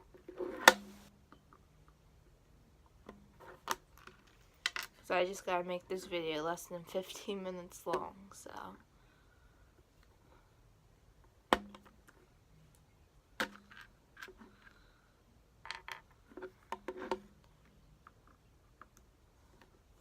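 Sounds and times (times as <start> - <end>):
plastic cube clicks and knocks: 13.4 - 14.4.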